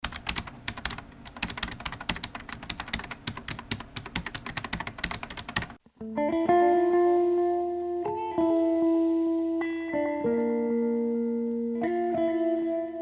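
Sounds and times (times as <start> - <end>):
keyboard typing clicks: 0.0 - 5.8
sustained guitar notes: 5.8 - 13.0.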